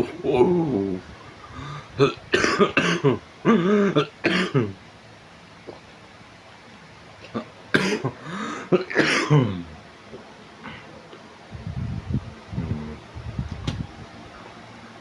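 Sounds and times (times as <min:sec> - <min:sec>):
person coughing: 0:02.0 - 0:04.8, 0:07.4 - 0:09.7.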